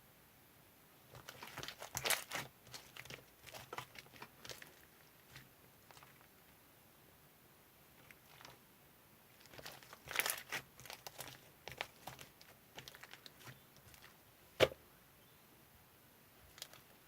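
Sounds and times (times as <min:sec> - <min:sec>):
crinkling and rustling: 0:01.1 - 0:06.6, 0:07.9 - 0:08.6, 0:09.3 - 0:14.8, 0:16.4 - 0:17.0.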